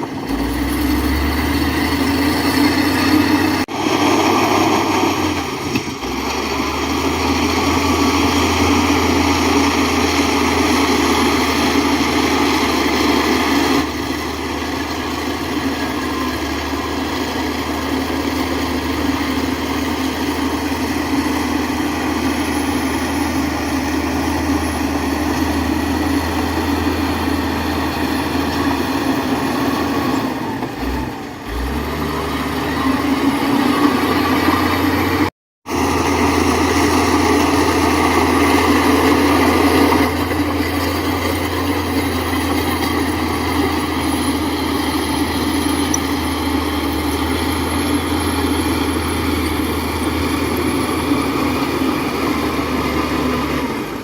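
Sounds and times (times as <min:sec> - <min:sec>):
heavy diesel engine droning: 0:00.0 - 0:54.0.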